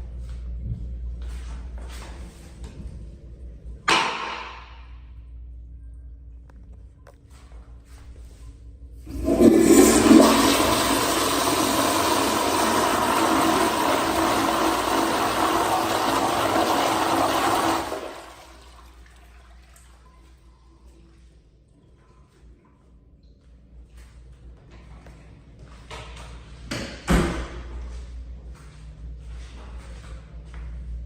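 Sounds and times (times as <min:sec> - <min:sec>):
toilet flushing: 0:09.0 - 0:20.5
faint water trickle: 0:18.5 - 0:23.6.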